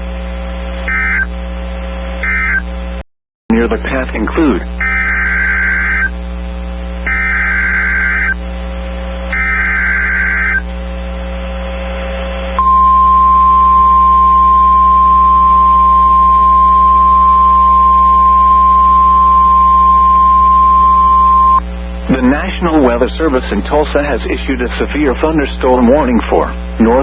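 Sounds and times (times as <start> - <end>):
low hum: 0.0 - 3.0, 4.6 - 24.9
screechy digital data bursts: 0.9 - 1.3, 2.2 - 2.7, 4.4 - 8.4, 9.3 - 10.7, 12.6 - 21.6
steady warning alarm tone: 0.9 - 1.3, 4.7 - 6.3, 7.0 - 8.5, 9.3 - 10.7, 12.6 - 21.7.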